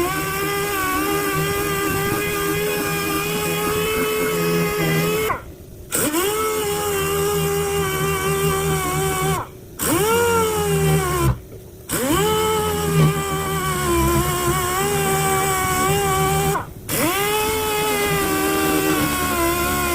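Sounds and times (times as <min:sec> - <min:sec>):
power sander whining: 0:00.0 - 0:19.9.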